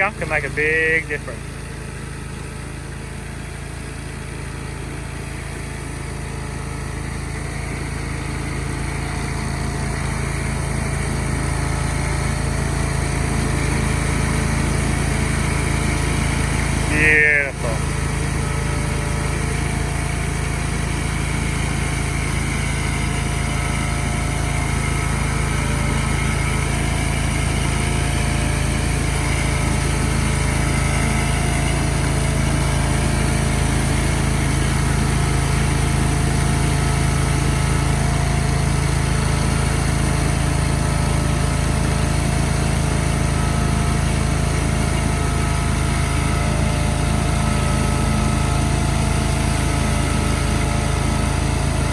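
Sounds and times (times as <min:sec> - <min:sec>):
small engine running steadily: 0:00.0 - 0:51.9.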